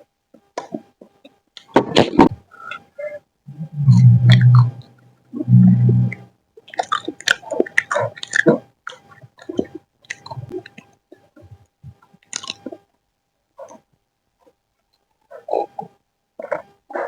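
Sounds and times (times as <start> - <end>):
chewing and biting food: 12.3 - 12.8.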